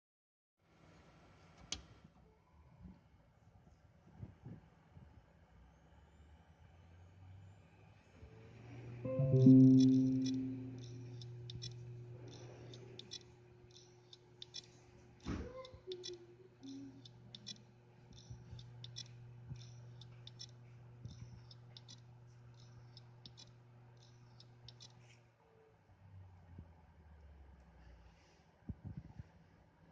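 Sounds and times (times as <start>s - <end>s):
hard disk drive spinning hum: 8.3s - 25.0s.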